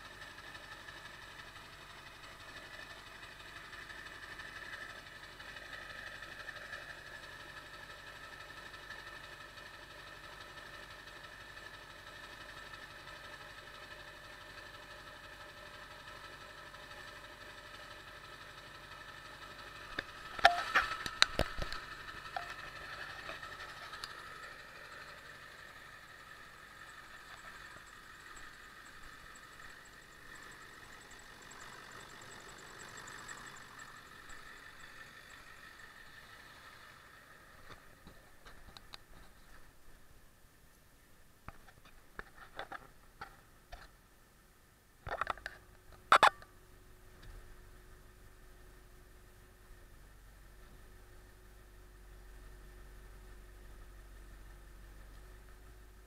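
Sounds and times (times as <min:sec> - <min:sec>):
diesel engine idling: 0:00.0 - 0:41.1, 0:45.2 - 0:56.0
sharp clicks and knocks: 0:19.9 - 0:24.2.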